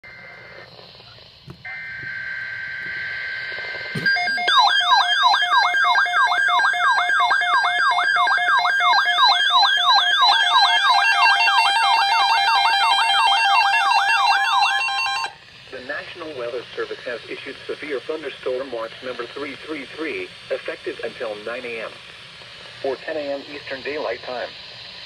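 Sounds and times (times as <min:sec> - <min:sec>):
warbling alert siren: 0:01.6 - 0:15.4
steady two-tone attention signal: 0:01.7 - 0:06.4
buzzy digital header bursts: 0:22.8 - 0:24.5.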